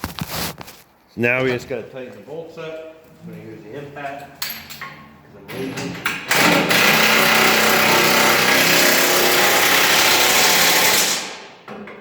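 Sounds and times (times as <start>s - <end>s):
impact wrench running: 6.0s - 11.5s.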